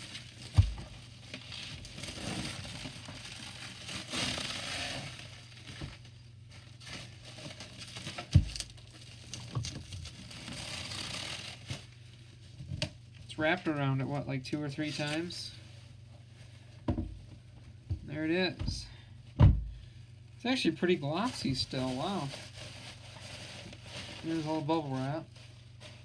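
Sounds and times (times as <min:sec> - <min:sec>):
bubble wrap crinkling: 0:00.0 - 0:13.8, 0:20.8 - 0:26.0.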